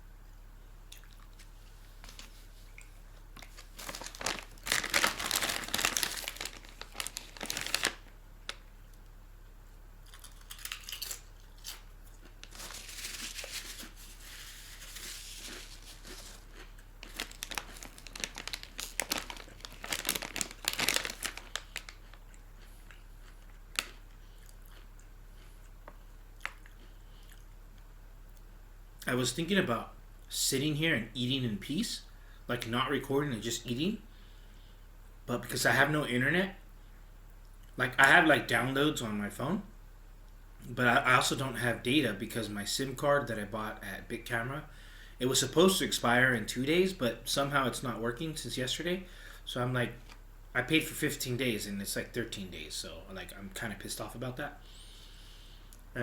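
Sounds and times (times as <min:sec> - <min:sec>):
plastic packaging crinkling and tearing: 0:01.4 - 0:02.4, 0:03.4 - 0:08.7, 0:10.1 - 0:22.4, 0:23.3 - 0:24.1.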